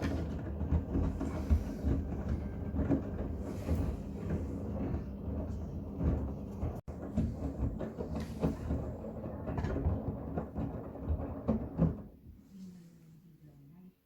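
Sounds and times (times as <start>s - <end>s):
laundry thudding in drum: 0.0s - 12.2s
washing machine drum rumbling: 0.0s - 12.2s.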